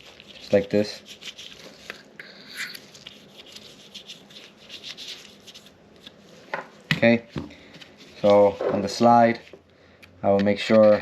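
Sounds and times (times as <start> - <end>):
hands scratching and rubbing: 0.0 - 6.2.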